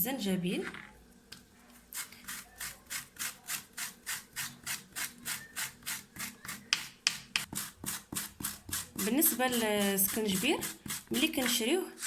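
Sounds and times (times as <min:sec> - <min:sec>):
ginger rasping on metal grater: 0:07.8 - 0:12.0.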